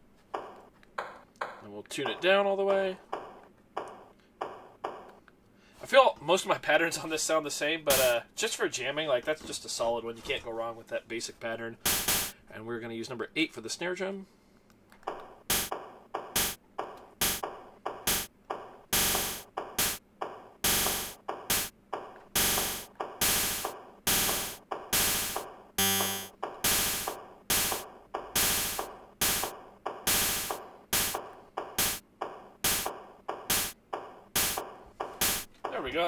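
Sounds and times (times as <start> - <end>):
drum machine looping beat: 7.9 - 8.2, 11.9 - 12.3, 15.1 - 35.7
glitchy stuttering sound: 11.9 - 12.3, 15.5 - 15.7, 16.4 - 16.6, 17.2 - 17.5, 18.1 - 18.3, 19.0 - 20.0, 20.6 - 21.7, 22.4 - 27.8, 28.4 - 29.5, 31.8 - 32.0, 32.6 - 33.8, 34.4 - 35.5.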